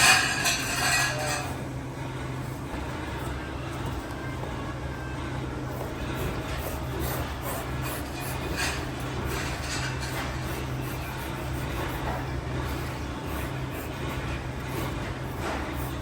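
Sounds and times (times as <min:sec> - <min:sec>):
workshop machinery humming: 0:00.0 - 0:16.0.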